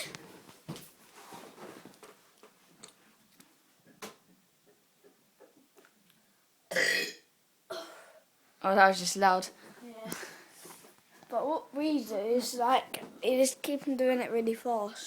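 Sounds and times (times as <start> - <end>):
boy burping: 6.7 - 8.2.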